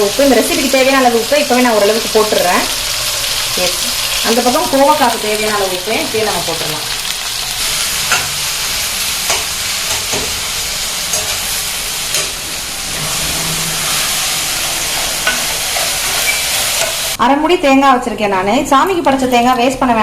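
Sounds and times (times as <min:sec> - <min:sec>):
vegetables sizzling in oil: 0:00.0 - 0:17.2
spatula scraping and tapping pan: 0:07.8 - 0:17.2.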